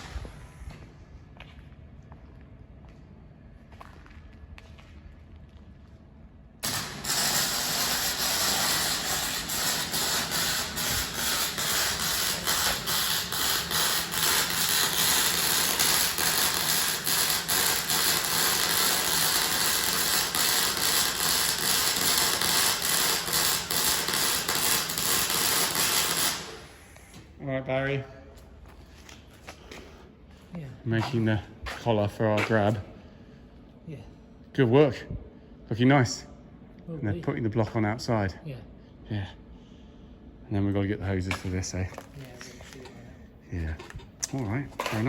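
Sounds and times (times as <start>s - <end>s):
metalworking tool hissing crackle: 6.6s - 27.2s.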